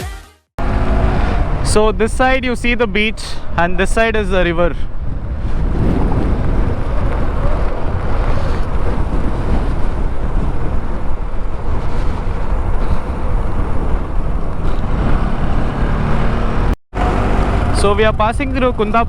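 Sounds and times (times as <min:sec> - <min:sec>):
motorcycle engine: 0:00.6 - 0:01.9, 0:05.7 - 0:18.2
road noise: 0:00.6 - 0:19.0
wind rush on microphone: 0:00.6 - 0:19.0.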